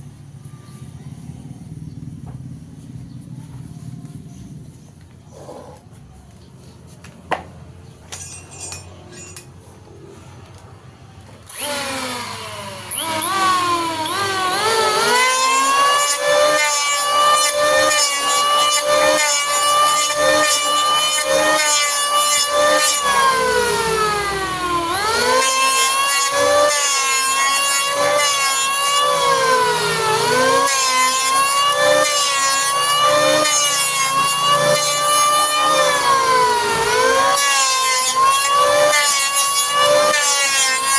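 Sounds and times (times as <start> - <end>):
electric planer motor whine: 11.5 - 40.9.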